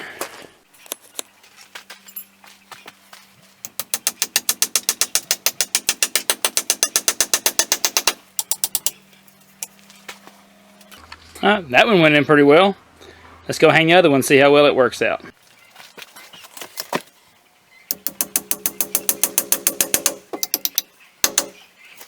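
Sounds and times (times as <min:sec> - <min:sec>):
hammer taps: 0:17.9 - 0:21.6.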